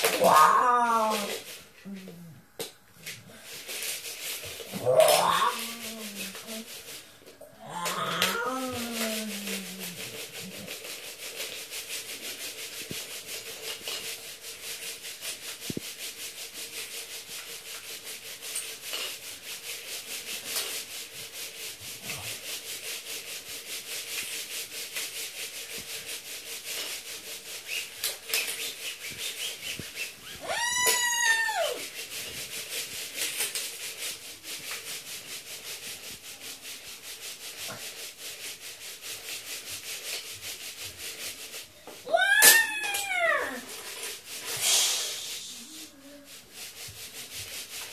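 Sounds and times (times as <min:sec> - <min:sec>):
person calling out: 0:04.8 - 0:06.6, 0:07.6 - 0:10.0, 0:42.1 - 0:43.7.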